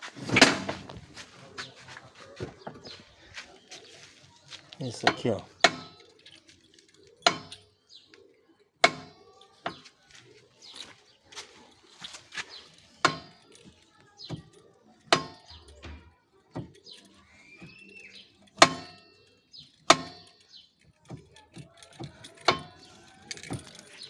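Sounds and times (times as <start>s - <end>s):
motorcycle stand clanking and rattling: 0.0s - 1.2s, 4.8s - 8.0s, 8.8s - 10.0s, 12.0s - 24.0s
bird chirping: 1.2s - 24.0s.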